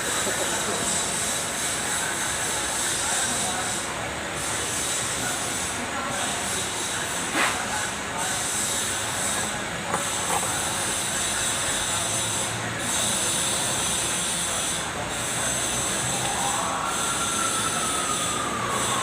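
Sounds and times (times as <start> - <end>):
diesel engine running: 7.9 - 19.0.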